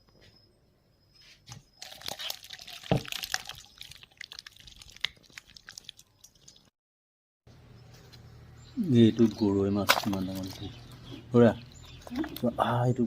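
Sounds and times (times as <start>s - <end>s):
water splashing and dripping: 1.8s - 6.7s, 9.2s - 10.8s.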